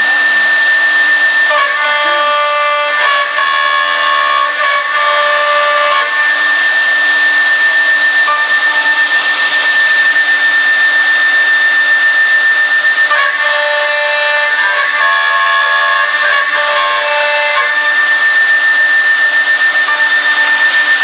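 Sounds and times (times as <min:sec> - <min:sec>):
router cutting rush: 0:00.0 - 0:21.0
router spindle whine: 0:00.0 - 0:21.0.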